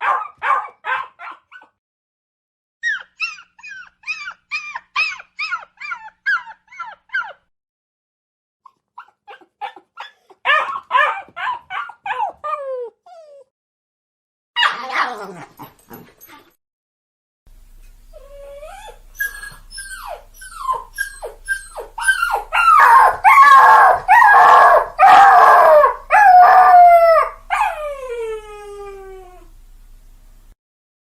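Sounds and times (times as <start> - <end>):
dog yelping and howling: 0.0 - 1.8, 2.8 - 7.5, 9.0 - 13.5, 14.6 - 15.9, 18.2 - 29.5.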